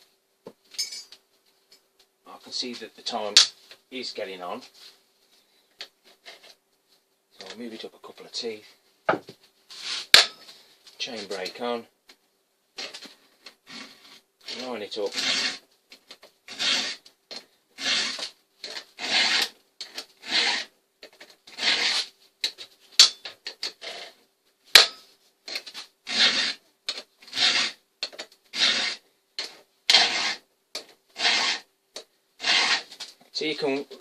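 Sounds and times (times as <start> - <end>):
file rasping on chainsaw chain: 13.7 - 15.6, 16.5 - 17.0, 17.8 - 20.7, 21.5 - 22.1, 26.1 - 26.6, 27.2 - 27.8, 28.5 - 29.0, 29.9 - 30.4, 31.2 - 31.7, 32.4 - 32.9.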